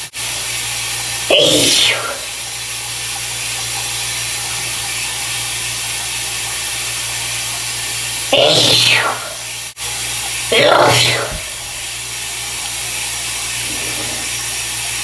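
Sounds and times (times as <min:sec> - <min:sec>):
running shower hiss: 0:00.0 - 0:15.0
man sneezing: 0:10.5 - 0:11.6.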